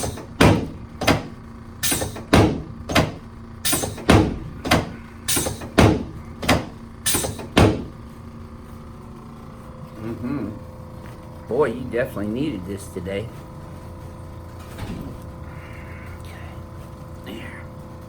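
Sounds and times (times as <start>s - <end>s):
loud thumps on treatment table: 0.0s - 8.0s.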